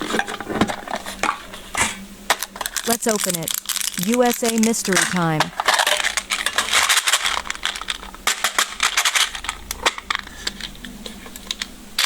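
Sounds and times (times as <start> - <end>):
packaging crinkling and rustling: 2.4 - 11.7.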